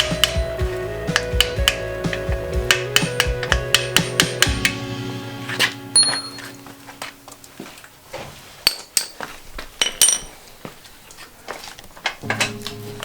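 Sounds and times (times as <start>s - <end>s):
steel tools clinking on metal: 6.0s - 6.6s, 9.8s - 10.4s.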